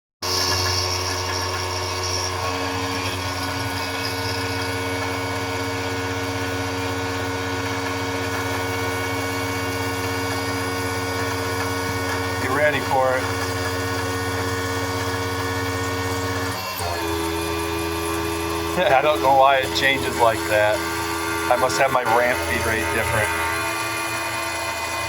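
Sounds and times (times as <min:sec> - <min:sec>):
cnc machine motor hum: 0:00.3 - 0:25.0
high whine: 0:09.4 - 0:24.4.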